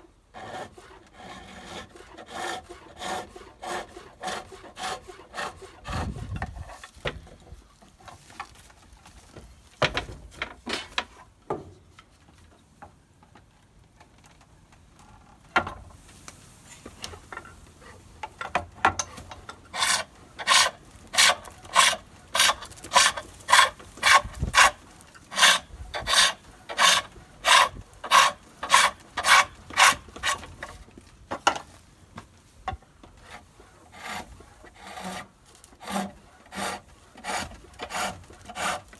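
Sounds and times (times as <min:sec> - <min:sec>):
lathe tool scraping wood: 0:19.3 - 0:30.7, 0:33.2 - 0:38.9.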